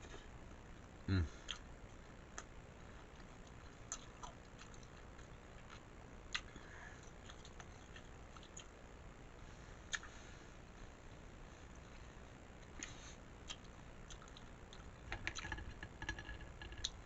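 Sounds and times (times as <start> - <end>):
person chewing food: 1.4 - 8.8, 9.9 - 10.2, 12.6 - 15.6
mouth clicks and smacks: 9.9 - 10.1.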